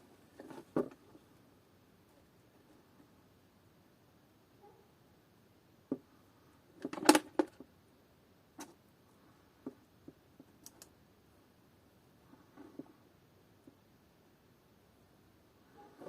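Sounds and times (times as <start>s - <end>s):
small tools clicking and tapping: 10.6s - 10.9s.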